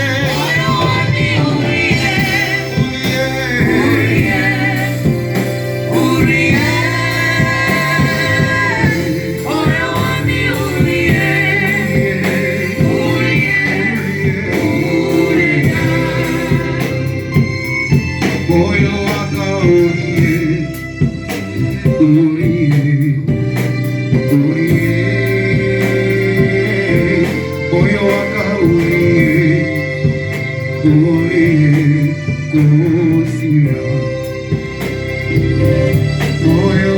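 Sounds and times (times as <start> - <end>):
gospel singing over a band: 0.0 - 36.9
sharp beats: 0.3 - 20.4.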